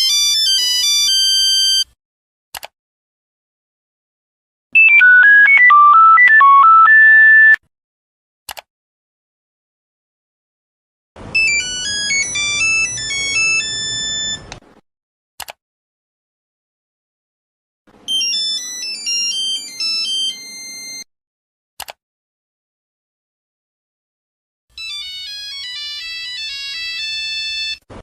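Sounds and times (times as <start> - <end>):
mobile phone ringtone: 0.0 - 1.9, 4.8 - 7.6, 11.3 - 14.6, 18.0 - 21.1, 24.8 - 27.9
brief click: 15.4 - 15.6, 21.8 - 22.0.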